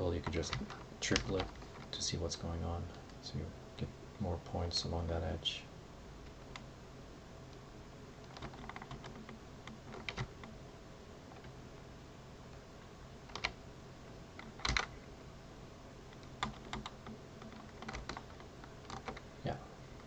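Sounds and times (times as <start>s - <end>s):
faint low hum: 0.0s - 20.0s
keyboard keystrokes and clicks: 0.2s - 2.0s, 8.2s - 10.5s, 13.3s - 13.6s, 14.4s - 14.9s, 16.1s - 19.2s.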